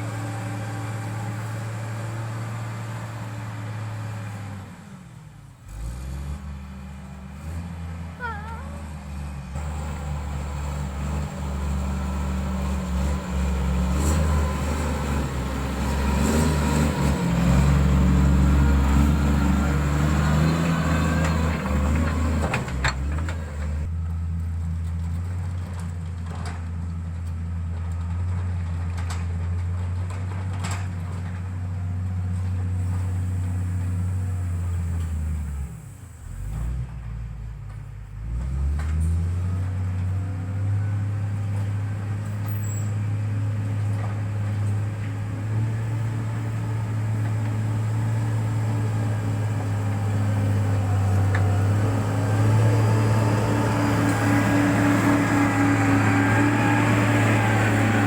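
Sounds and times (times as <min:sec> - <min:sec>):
diesel engine running: 0:00.0 - 0:58.0
short squeaks: 0:42.4 - 0:43.1.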